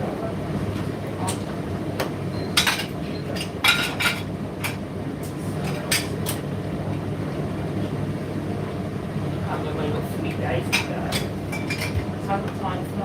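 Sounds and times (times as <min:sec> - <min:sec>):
tumble dryer rumbling: 0:00.0 - 0:02.3.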